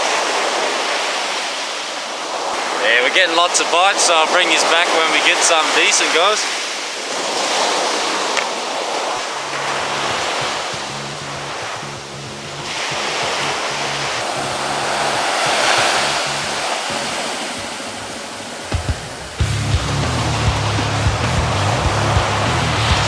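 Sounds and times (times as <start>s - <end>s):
ocean surf washing onto beach: 0.0s - 23.0s
background music with bass: 9.4s - 17.4s, 18.7s - 23.0s.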